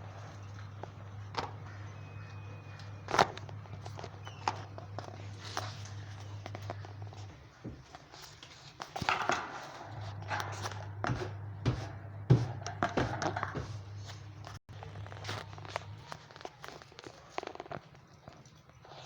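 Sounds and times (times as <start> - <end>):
budgies chirping: 0.0 - 8.7
steady low hum: 0.0 - 17.8.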